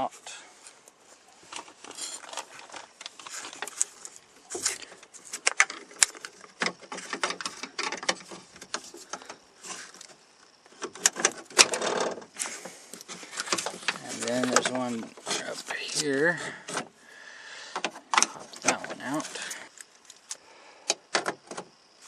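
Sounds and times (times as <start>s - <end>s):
metal rods and plastic clips clicking: 4.5s - 16.9s, 17.8s - 21.7s.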